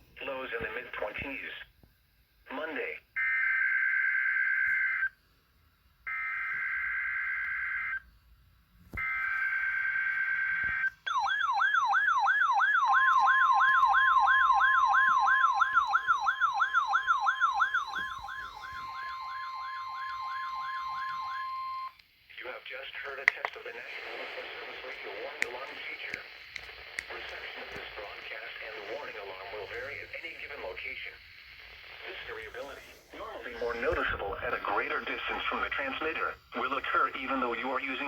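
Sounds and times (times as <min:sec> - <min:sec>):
fast warbling alarm siren: 0:09.0 - 0:21.9
steady alarm tone: 0:09.1 - 0:22.0.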